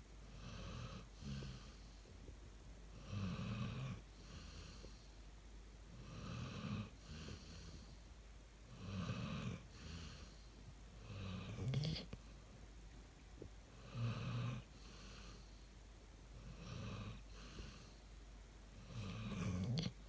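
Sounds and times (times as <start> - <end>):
dog snoring: 0.2 - 2.0, 2.9 - 5.0, 5.9 - 8.0, 8.7 - 12.3, 13.7 - 15.7, 16.4 - 18.0, 18.8 - 20.0.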